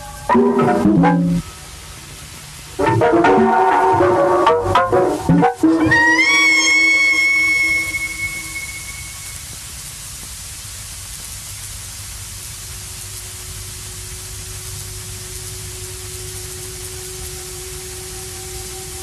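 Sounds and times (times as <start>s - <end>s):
radio static hiss: 0.0s - 19.0s
higher tone: 2.8s - 9.6s.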